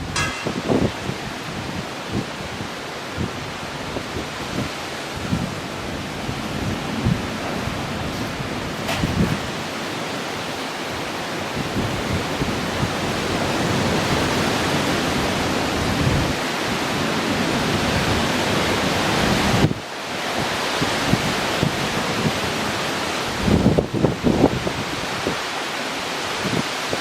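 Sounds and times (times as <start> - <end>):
wind buffeting microphone: 0.0 - 14.8
wind and rain rushing: 0.0 - 27.0.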